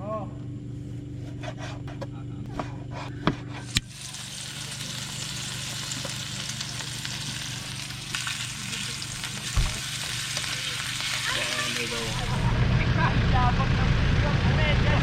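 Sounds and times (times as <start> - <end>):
low hum: 0.0 - 15.0
food sizzling in a frying pan: 3.8 - 12.5
dull thump: 9.6 - 9.8.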